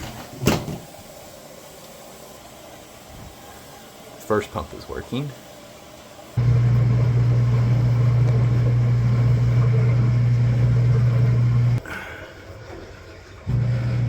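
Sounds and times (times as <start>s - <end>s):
washer pump motor humming: 6.0s - 14.0s.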